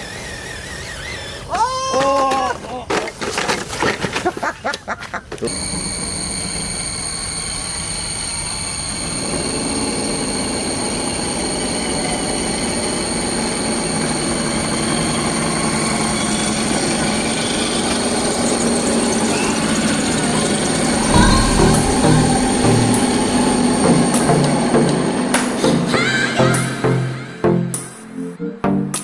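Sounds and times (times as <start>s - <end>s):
electric motor whine: 0.0s - 1.9s, 5.5s - 25.7s
gears and tyres grinding: 0.0s - 25.7s.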